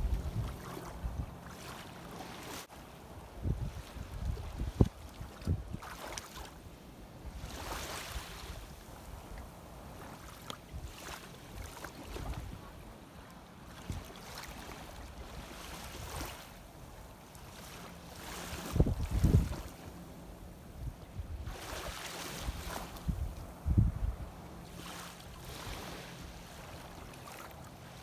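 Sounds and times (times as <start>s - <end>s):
wind buffeting microphone: 0.0s - 1.5s, 3.2s - 6.0s, 18.5s - 19.7s, 20.7s - 24.4s
seawater washing and splashing: 0.0s - 2.7s, 24.7s - 28.0s.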